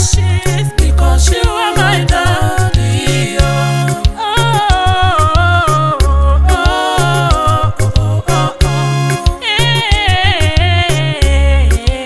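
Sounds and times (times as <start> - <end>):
heavy sustained bass line: 0.0 - 9.2
gospel singing voices: 0.0 - 12.0
regular drum beat: 1.3 - 5.5.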